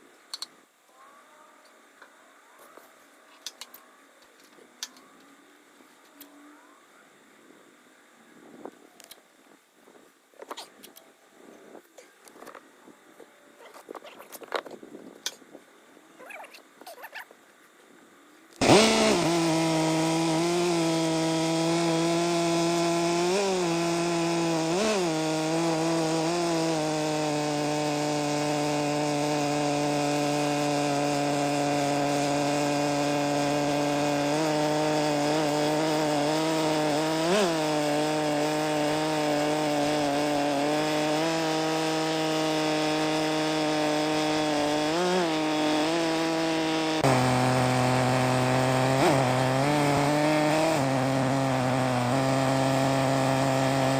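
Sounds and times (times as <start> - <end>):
chainsaw ripping a log: 18.6 - 53.9.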